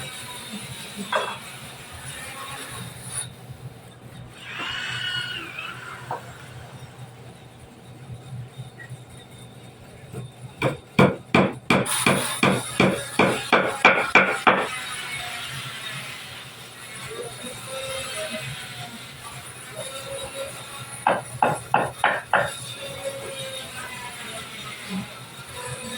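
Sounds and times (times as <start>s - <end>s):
hammer striking wood: 10.6s - 14.7s, 21.0s - 22.5s.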